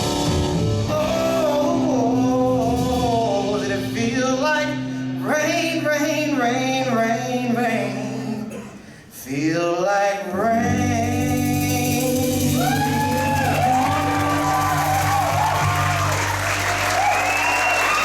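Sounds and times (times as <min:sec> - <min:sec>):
blues band playing: 0:00.0 - 0:06.7, 0:10.6 - 0:18.0
held bass notes: 0:00.0 - 0:08.4, 0:10.7 - 0:17.0
person singing: 0:00.0 - 0:15.9.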